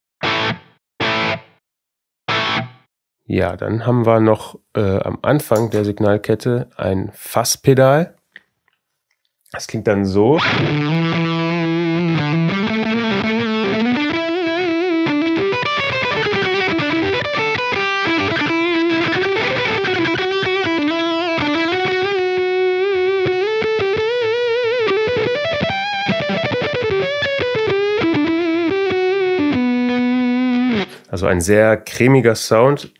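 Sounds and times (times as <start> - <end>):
distorted electric guitar lead melody: 0.2 - 1.6, 2.3 - 2.8, 10.4 - 31.0.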